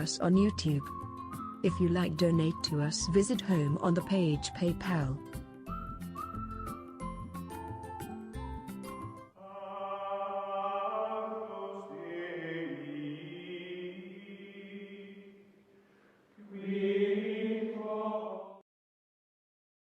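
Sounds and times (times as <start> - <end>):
chant-like vocal music: 9.4 - 15.5, 16.4 - 18.6.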